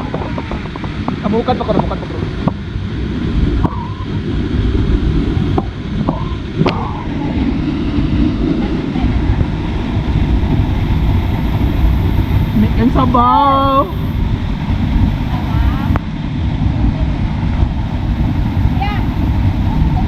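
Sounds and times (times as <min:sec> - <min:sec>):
waterfall rushing: 0:06.8 - 0:16.0, 0:17.2 - 0:20.0.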